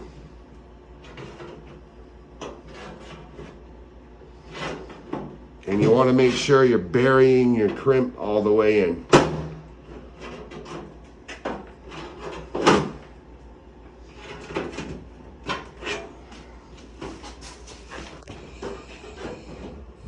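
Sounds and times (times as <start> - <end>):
sheet-metal duct knocking and scraping: 4.4 - 8.0, 9.1 - 13.0.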